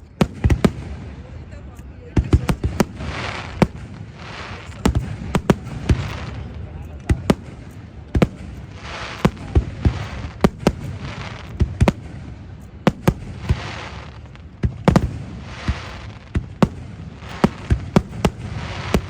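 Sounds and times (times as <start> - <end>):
firework crackling: 0.0 - 19.0
firework shells banging: 4.6 - 19.0.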